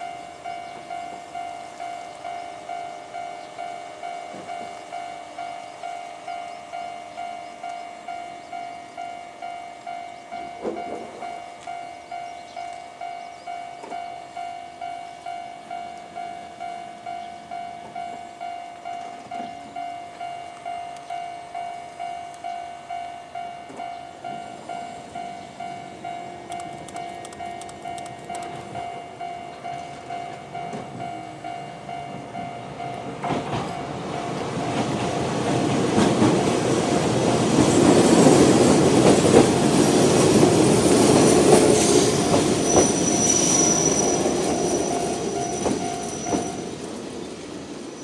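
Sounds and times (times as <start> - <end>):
level-crossing alarm ringing: 0.0 - 47.4
electric train passing: 0.0 - 48.0
wheels clacking on rails: 0.0 - 48.0
high wheel squeal: 39.8 - 47.1.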